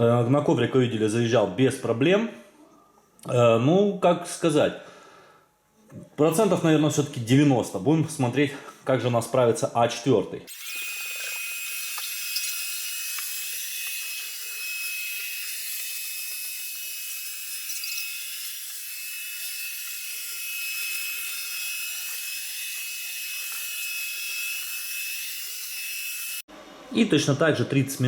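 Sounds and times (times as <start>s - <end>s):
robot vacuum cleaner running: 10.5s - 27.0s.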